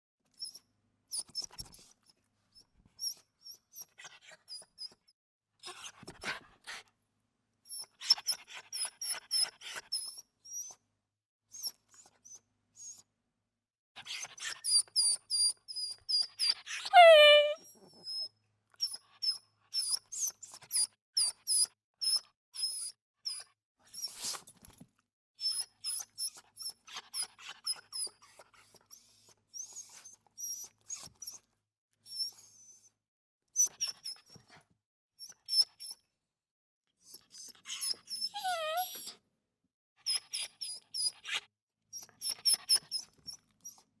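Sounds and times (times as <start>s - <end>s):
puppy whimpering: 16.9s - 17.6s, 37.4s - 39.2s
puppy whining: 16.9s - 18.0s, 37.4s - 39.2s.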